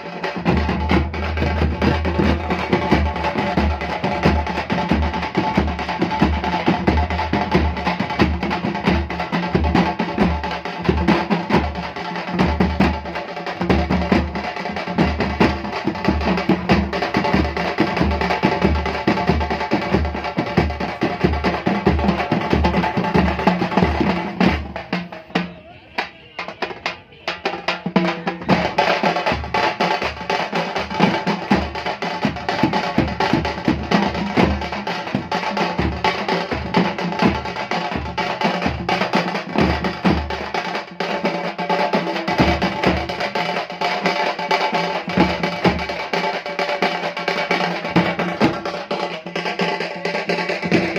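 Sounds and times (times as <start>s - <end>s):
drum ensemble playing loudly: 0.0s - 50.9s.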